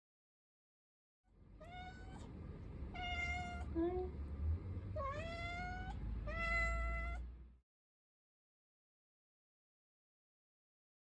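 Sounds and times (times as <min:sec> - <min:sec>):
kitten meowing: 0:01.6 - 0:02.3, 0:03.0 - 0:04.1, 0:05.0 - 0:07.2
kitten squeaky calls: 0:05.0 - 0:07.2.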